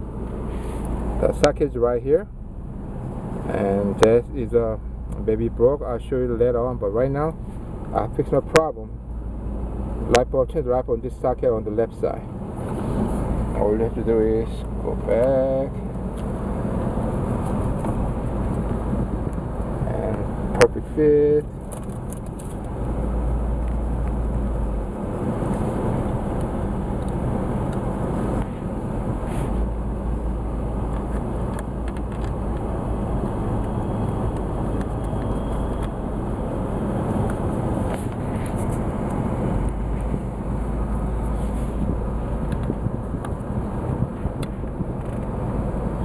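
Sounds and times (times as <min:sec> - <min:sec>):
low vehicle rumble: 0:00.0 - 0:46.0
small clicks and knocks: 0:30.9 - 0:36.0.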